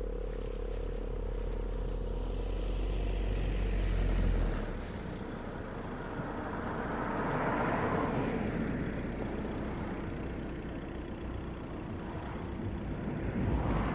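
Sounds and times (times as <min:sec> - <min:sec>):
road vehicle passing: 0:00.0 - 0:13.9
steady low rumble: 0:09.2 - 0:13.9.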